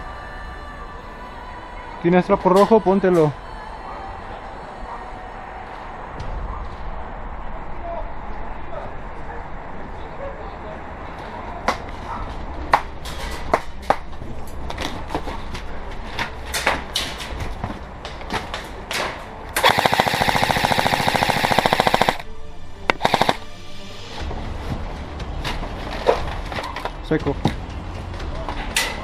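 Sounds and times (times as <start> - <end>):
airsoft gun full-auto bursts: 19.6 - 22.2, 22.9 - 23.4
airsoft gun shots: 19.6 - 22.2, 22.9 - 23.4.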